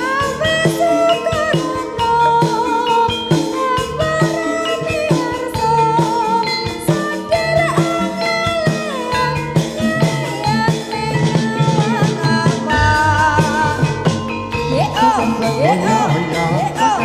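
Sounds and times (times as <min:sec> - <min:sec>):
percussion ensemble beat: 0:00.0 - 0:17.0
bending melodic lead: 0:12.7 - 0:16.8.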